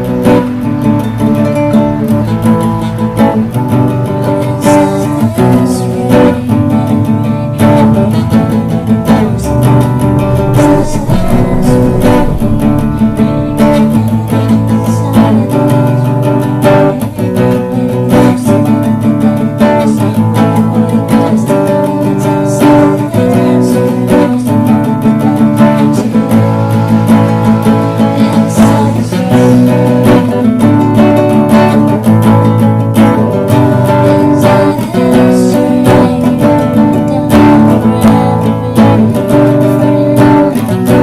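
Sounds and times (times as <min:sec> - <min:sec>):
acoustic guitar strumming: 0:00.0 - 0:41.0.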